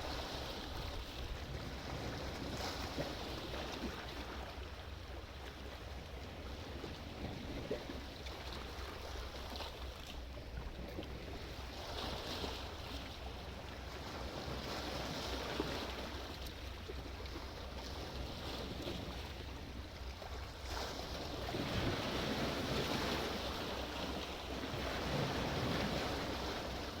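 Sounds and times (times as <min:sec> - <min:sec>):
wind rumble on microphone: 0:00.0 - 0:09.2, 0:17.3 - 0:27.0
sea waves washing in: 0:20.6 - 0:27.0.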